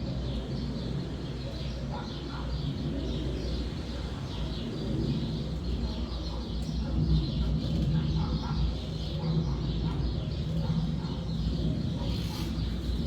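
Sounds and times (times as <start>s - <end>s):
wind in a forest: 0.0s - 13.0s
small birds chirping: 0.2s - 13.0s.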